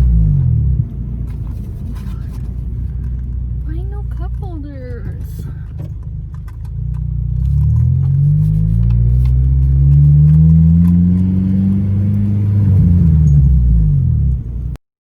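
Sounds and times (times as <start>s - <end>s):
car engine and exhaust accelerating: 0.0s - 14.8s
person speaking: 3.7s - 5.7s.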